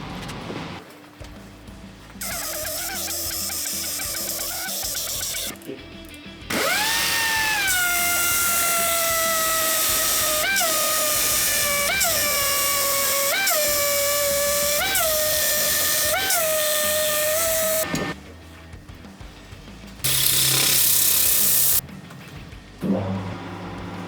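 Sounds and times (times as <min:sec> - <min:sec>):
background music: 0:00.0 - 0:24.0
metal lathe whining: 0:06.5 - 0:18.2.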